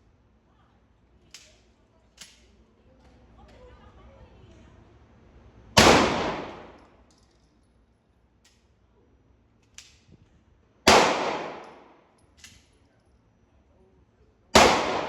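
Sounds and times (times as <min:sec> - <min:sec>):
gunshot with echo: 0:05.8 - 0:06.8, 0:10.9 - 0:11.9, 0:14.6 - 0:15.0.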